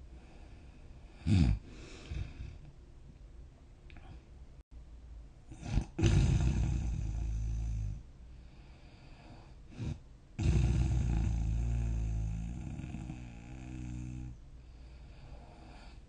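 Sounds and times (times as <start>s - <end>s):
person snoring: 1.2s - 2.7s, 5.5s - 8.0s, 9.1s - 14.4s.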